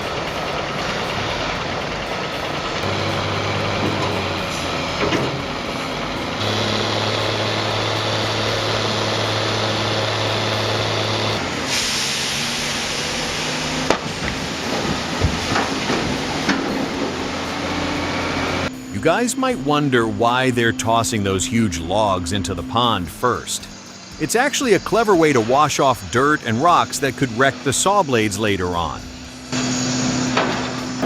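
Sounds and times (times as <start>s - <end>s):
diesel machinery humming: 0.0s - 31.0s
loud hiss: 6.3s - 15.2s, 22.6s - 31.0s.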